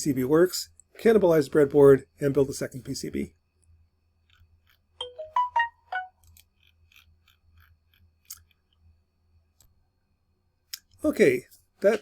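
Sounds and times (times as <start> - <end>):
electronic chime: 5.0 - 6.1.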